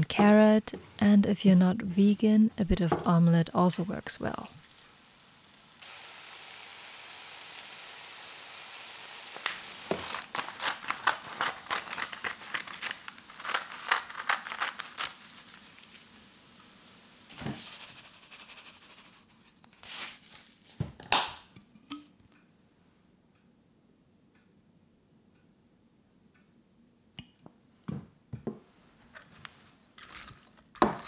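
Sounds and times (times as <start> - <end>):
cooking hiss: 2.0 - 20.6, 30.0 - 31.0
crackles and crinkles: 9.4 - 16.4, 18.9 - 20.8, 28.9 - 31.0.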